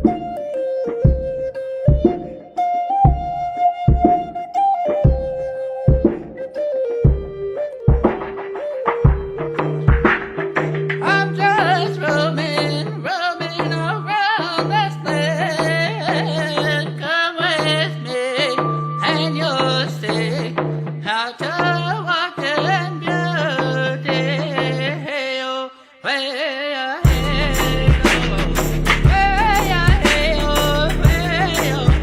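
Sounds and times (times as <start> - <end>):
person singing ornamented melody: 11.0 - 32.0.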